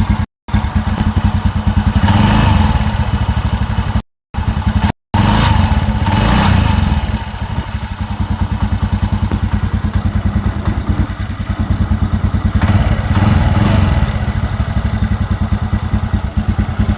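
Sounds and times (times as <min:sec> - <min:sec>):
scooter engine idling: 0:00.0 - 0:16.9.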